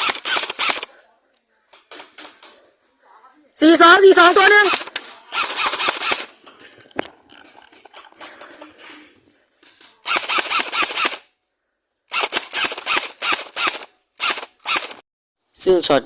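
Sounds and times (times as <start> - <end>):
airsoft rifles firing bursts: 0.0 - 0.9, 4.2 - 6.4, 10.0 - 11.3, 12.1 - 15.0.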